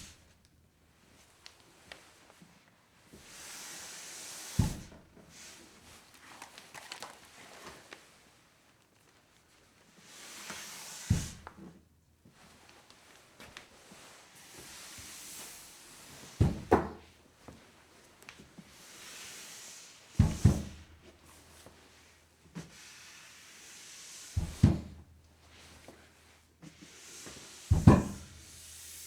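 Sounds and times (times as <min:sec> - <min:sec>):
hissing slide with double knock: 0:26.7 - 0:29.0.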